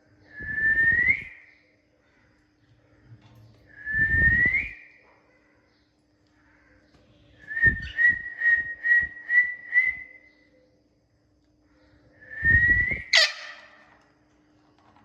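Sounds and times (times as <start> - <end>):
parrot whistling: 12.8 - 13.8.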